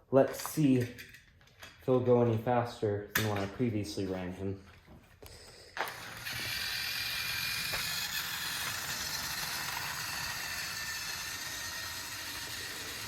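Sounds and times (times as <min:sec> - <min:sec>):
toy train motor whirring: 0:05.3 - 0:13.0.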